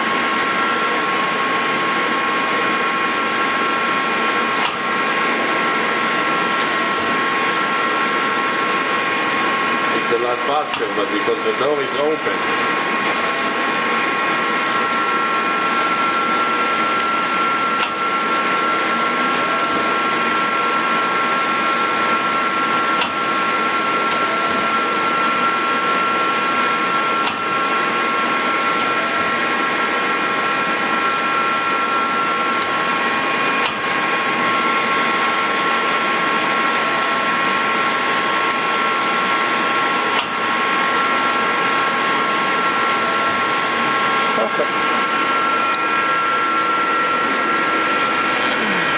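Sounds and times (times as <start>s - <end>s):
lathe mechanical hum: 0.0s - 48.9s
sharp click: 27.2s - 27.4s, 40.2s - 40.4s.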